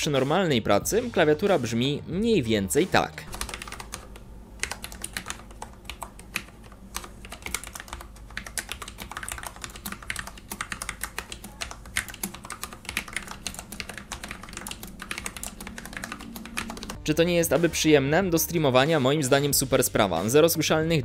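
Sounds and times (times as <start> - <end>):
typing on mechanical keyboard: 3.3 - 17.0.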